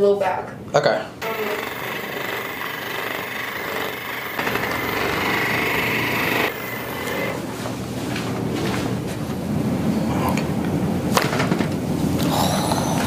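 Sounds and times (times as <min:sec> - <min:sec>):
small electric motor whining: 0:01.2 - 0:07.4.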